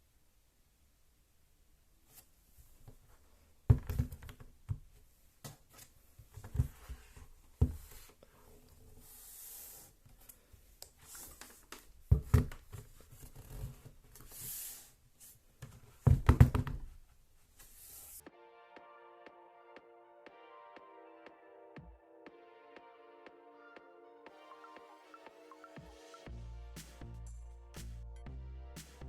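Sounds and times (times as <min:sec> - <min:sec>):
soft rubbing slides: 0:07.9 - 0:10.0, 0:17.4 - 0:18.2.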